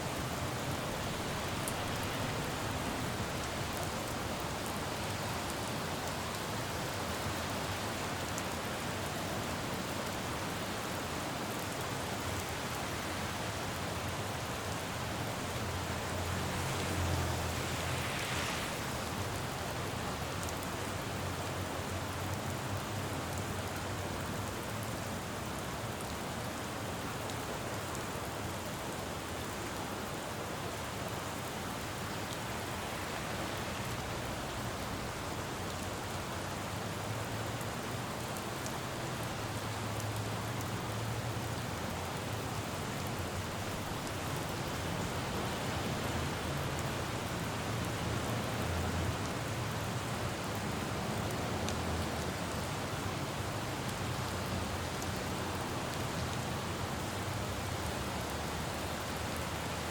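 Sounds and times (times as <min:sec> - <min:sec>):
rain falling on road: 0:00.0 - 0:59.9
traffic rumble: 0:12.6 - 0:21.0, 0:31.0 - 0:35.9, 0:38.8 - 0:59.1.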